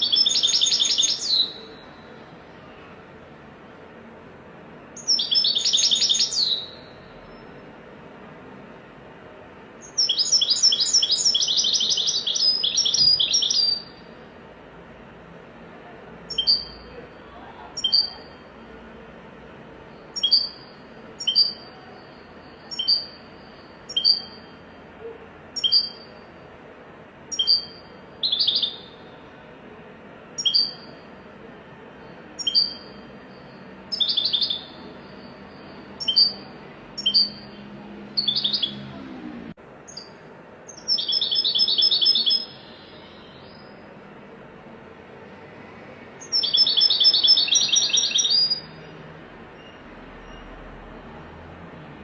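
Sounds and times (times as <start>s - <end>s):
goldfinch chirping: 0.0s - 1.8s, 5.0s - 7.5s, 9.8s - 14.0s, 16.3s - 16.9s, 17.8s - 18.4s, 20.0s - 21.8s, 22.6s - 24.5s, 25.6s - 26.2s, 27.3s - 29.0s, 30.4s - 31.0s, 32.4s - 37.6s, 38.2s - 38.8s, 39.9s - 43.8s, 46.2s - 48.7s
goldfinch rattling trills: 20.2s - 21.7s.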